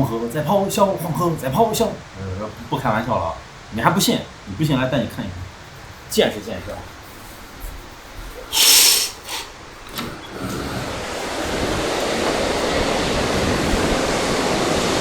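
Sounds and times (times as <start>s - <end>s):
waterfall roaring: 0.0s - 15.0s
short sharp hiss: 7.1s - 10.1s.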